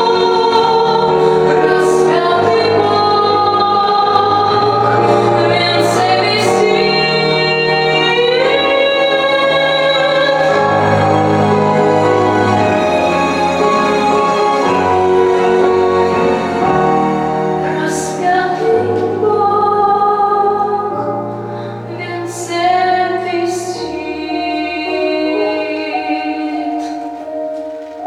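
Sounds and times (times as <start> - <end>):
song with sung voices: 0.0 - 28.0.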